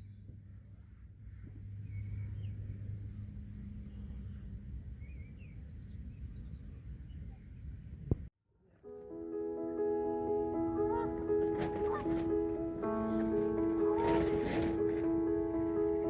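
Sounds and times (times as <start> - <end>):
low steady hum and rumble: 0.0 - 5.6
small songbirds chirping: 0.0 - 8.3, 14.8 - 16.0.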